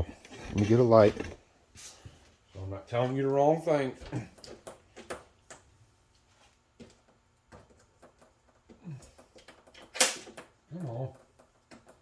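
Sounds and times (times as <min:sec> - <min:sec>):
faint clicks and knocks: 0:06.8 - 0:12.0.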